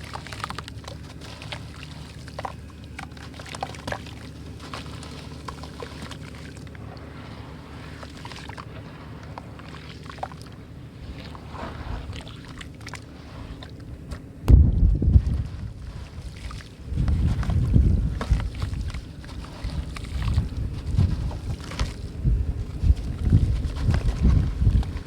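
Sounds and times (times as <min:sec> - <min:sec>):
steady low rumble: 0:00.0 - 0:25.0
loud low thump: 0:14.5 - 0:15.2.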